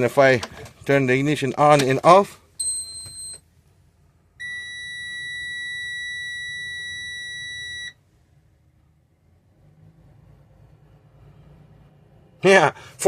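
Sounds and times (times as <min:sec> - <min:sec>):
dashboard warning buzzer beeping: 0:04.4 - 0:08.0.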